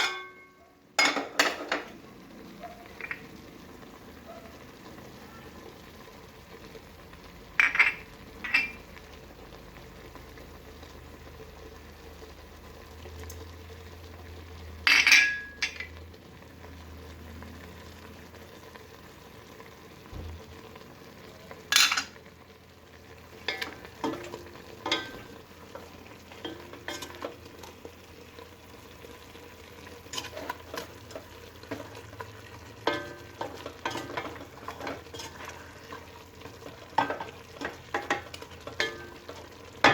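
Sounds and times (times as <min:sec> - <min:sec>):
chicken frying in oil: 0:00.0 - 0:39.9
utensil scraping and knocking pot: 0:23.4 - 0:27.7, 0:30.1 - 0:39.9.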